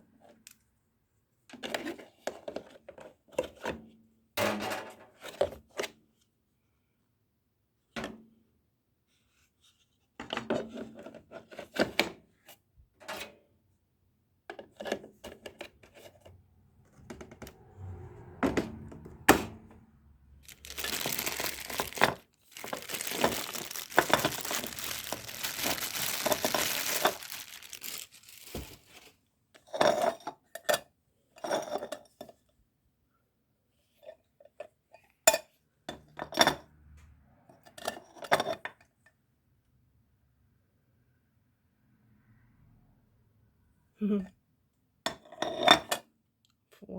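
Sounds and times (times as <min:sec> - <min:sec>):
packaging tearing and crinkling: 0:20.4 - 0:29.1.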